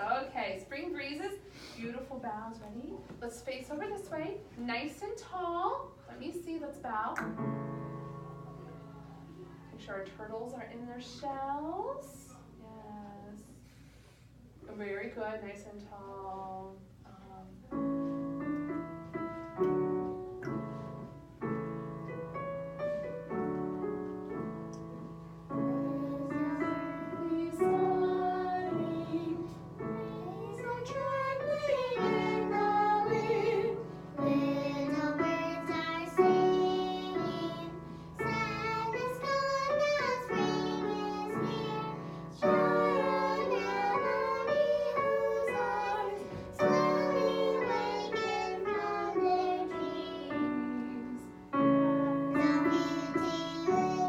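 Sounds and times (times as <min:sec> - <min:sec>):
piano accompaniment: 0:06.9 - 0:12.6, 0:17.5 - 0:54.0
children singing together: 0:25.6 - 0:54.0.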